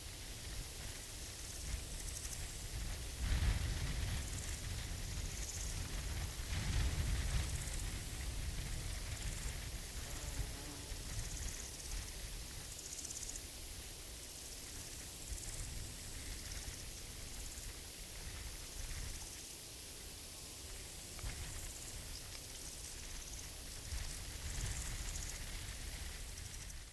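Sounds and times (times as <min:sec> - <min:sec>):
insects chirping: 0:00.0 - 0:26.9
low rumble of breeze: 0:00.0 - 0:26.9
steady high hiss: 0:00.0 - 0:26.9.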